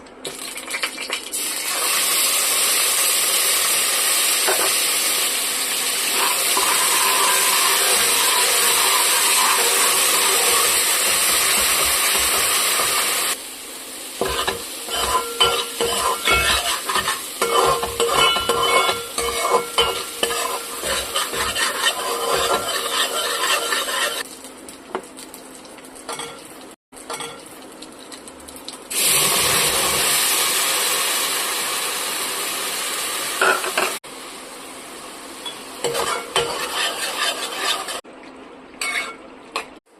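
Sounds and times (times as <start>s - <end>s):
food sizzling in hot oil: 0.2s - 38.1s
spoon stirring and scraping pan: 6.1s - 13.1s, 14.2s - 24.2s, 26.1s - 27.5s, 35.5s - 38.0s, 38.8s - 39.8s.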